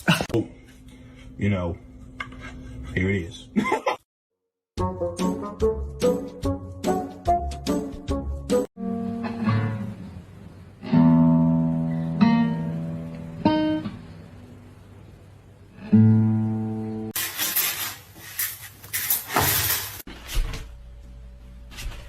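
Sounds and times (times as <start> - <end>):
acoustic guitar plucking: 8.8 - 10.2.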